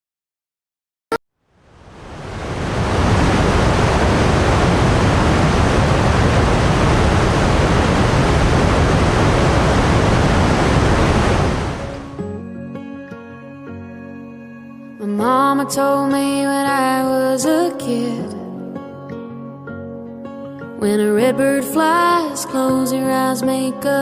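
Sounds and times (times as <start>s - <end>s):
steady rushing noise: 1.7s - 12.2s
soft music with held notes: 12.1s - 24.0s.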